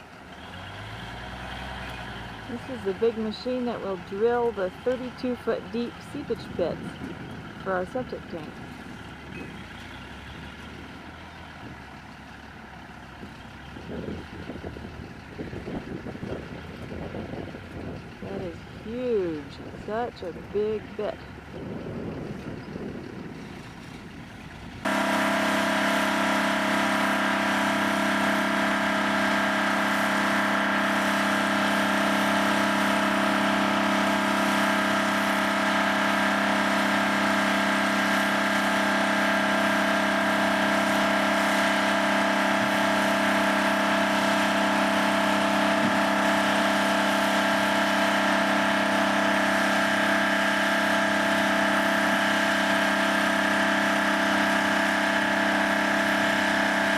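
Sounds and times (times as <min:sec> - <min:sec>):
drilling rig engine running: 0:00.0 - 0:56.9.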